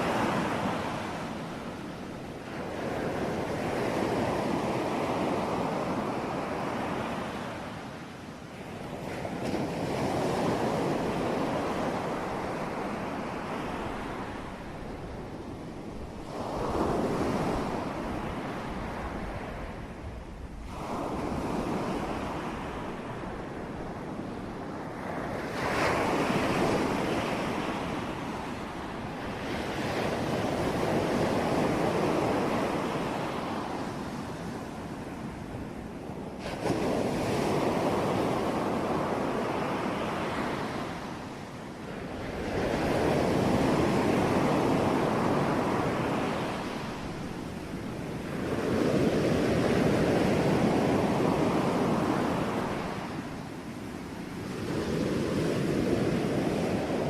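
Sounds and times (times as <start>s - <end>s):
ocean waves breaking on shore: 0.0s - 57.0s.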